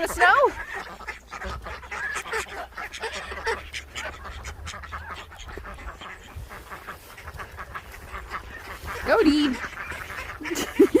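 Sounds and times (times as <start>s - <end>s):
ducks quacking: 0.0s - 11.0s.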